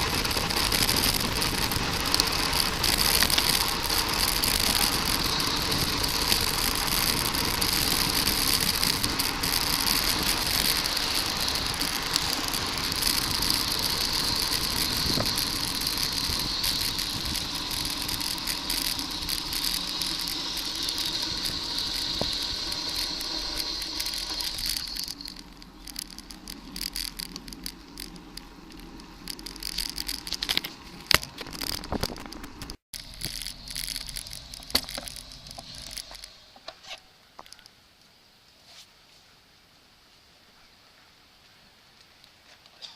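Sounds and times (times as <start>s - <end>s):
bicycle clicks and rattles: 0.0s - 37.8s
wind and road noise: 0.0s - 38.0s.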